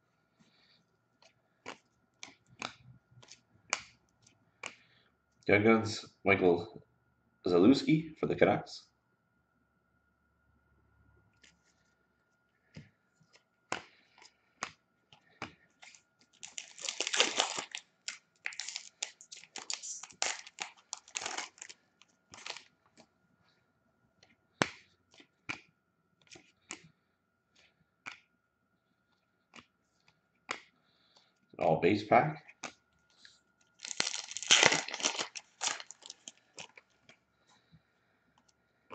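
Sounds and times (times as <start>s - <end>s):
cards clicking and snapping: 1.2s - 4.9s, 13.3s - 23.1s, 24.6s - 26.9s
wrapper tearing and crinkling: 16.4s - 22.7s, 33.8s - 36.8s.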